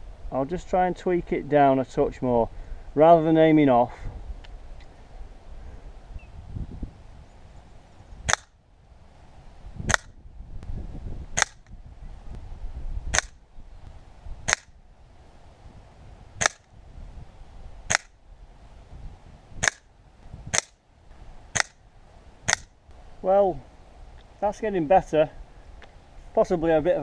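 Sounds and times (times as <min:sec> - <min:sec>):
air rifle shots cracking: 0:08.3 - 0:08.6, 0:09.9 - 0:10.1, 0:11.4 - 0:11.7, 0:13.1 - 0:13.4, 0:14.5 - 0:14.7, 0:16.4 - 0:16.7, 0:17.9 - 0:18.2, 0:19.6 - 0:19.9, 0:20.5 - 0:20.8, 0:21.5 - 0:21.8, 0:22.5 - 0:22.7.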